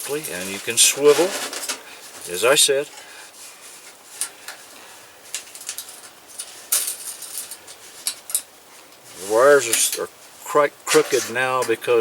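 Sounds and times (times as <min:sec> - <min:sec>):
thin sheet metal clicking and rattling: 0:00.0 - 0:01.8.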